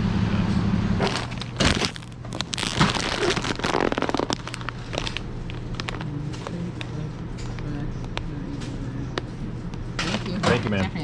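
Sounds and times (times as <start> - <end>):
steady low hum: 0.0 - 11.0
irregular crackling and clicks: 1.0 - 8.3.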